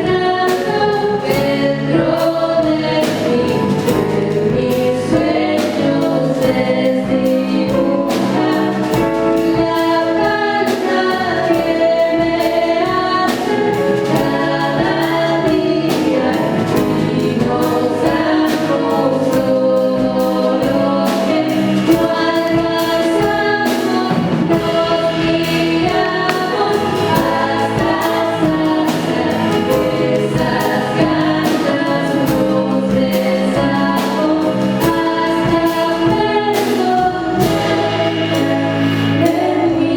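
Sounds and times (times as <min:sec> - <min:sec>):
vocal group singing in harmony: 0:00.0 - 0:39.9
light steady beat: 0:24.4 - 0:30.2.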